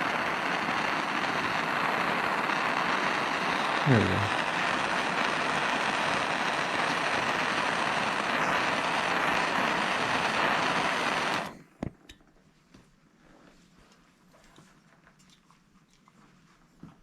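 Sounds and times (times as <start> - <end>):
gas torch flame hissing: 0.0 - 11.6.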